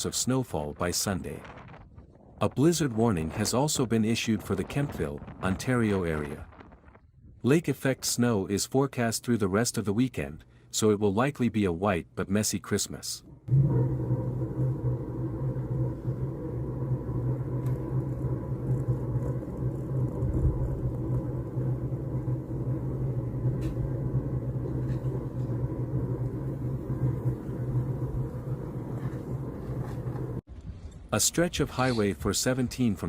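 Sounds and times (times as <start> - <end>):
vehicle engine rumble: 13.5 - 31.1.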